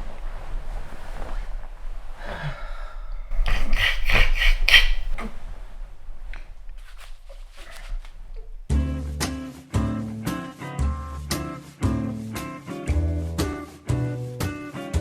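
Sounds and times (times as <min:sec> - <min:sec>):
person breathing noisily: 0:02.2 - 0:05.4.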